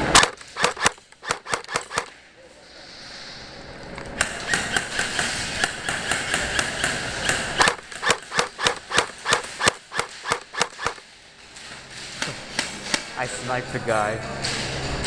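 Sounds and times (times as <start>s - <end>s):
airsoft guns firing: 0.0s - 2.2s, 4.2s - 11.1s.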